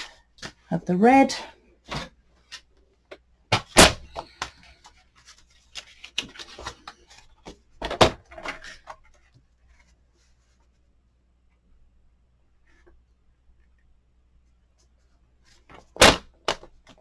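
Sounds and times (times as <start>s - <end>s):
paper rustling: 4.2s - 7.6s.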